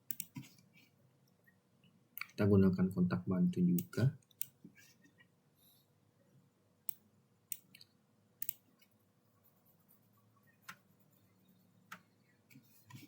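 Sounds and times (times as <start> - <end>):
computer mouse clicks: 0.0 - 0.6, 3.8 - 4.6, 6.8 - 8.9, 10.5 - 10.9, 11.8 - 12.1.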